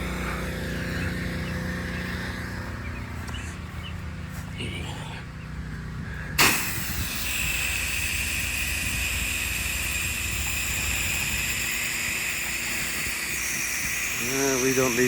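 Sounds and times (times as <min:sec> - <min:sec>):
hose nozzle spraying: 0:06.4 - 0:15.0.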